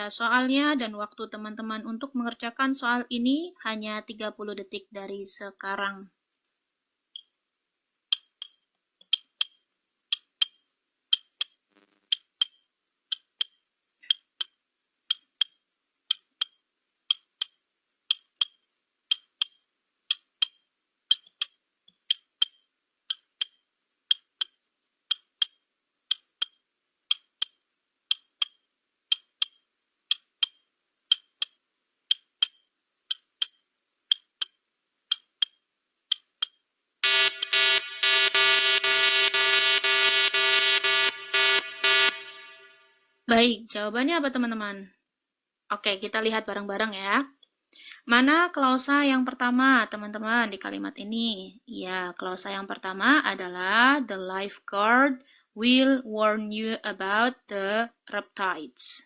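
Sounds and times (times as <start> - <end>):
clock ticking: 7.2 - 7.4, 8.1 - 37.6.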